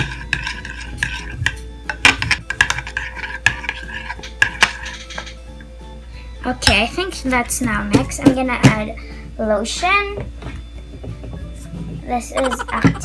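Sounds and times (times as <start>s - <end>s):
spoon scraping and knocking bowl: 0.0s - 5.4s.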